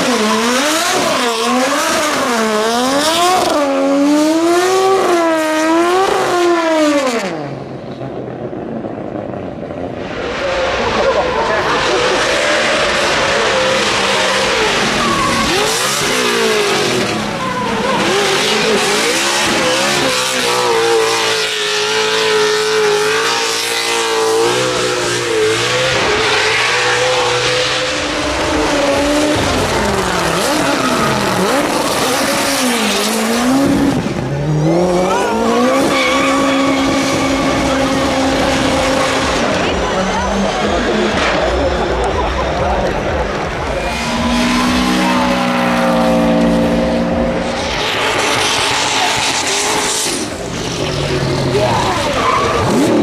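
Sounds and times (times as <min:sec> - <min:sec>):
racing car engine revving: 0:00.0 - 0:53.0
tyres squealing: 0:11.2 - 0:33.6, 0:34.9 - 0:42.2, 0:48.1 - 0:53.0.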